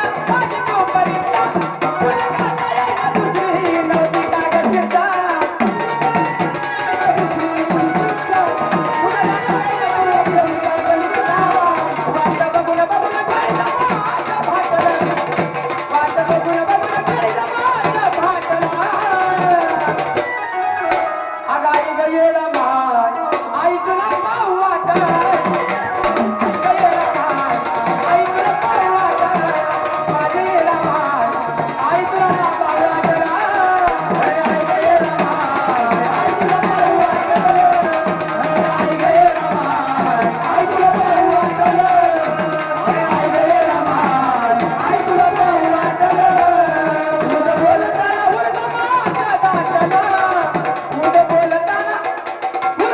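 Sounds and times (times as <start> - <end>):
paired drums playing: 25.0 - 46.5.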